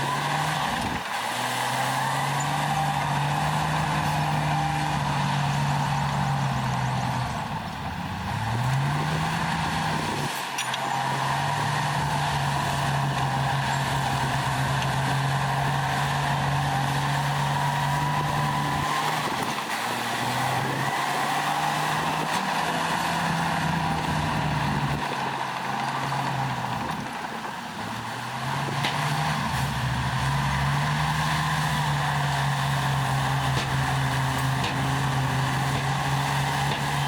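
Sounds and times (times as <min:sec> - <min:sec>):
heavy diesel engine under load: 0:00.0 - 0:37.0.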